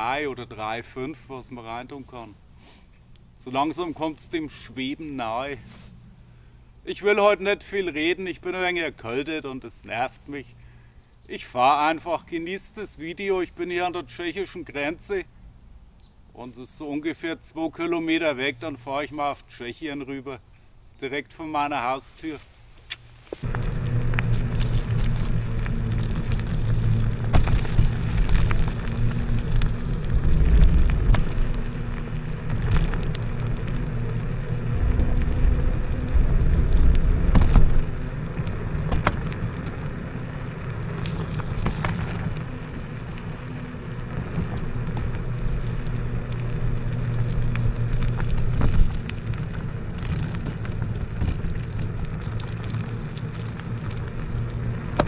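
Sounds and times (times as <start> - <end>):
tyre rumble on rough ground: 23.3 - 55.0
electric scooter motor hum: 23.4 - 55.0.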